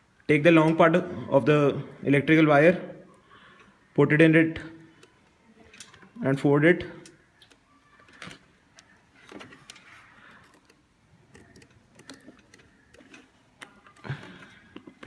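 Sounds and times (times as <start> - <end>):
faint clicks and rustles of wires: 4.8 - 6.2, 6.9 - 15.0.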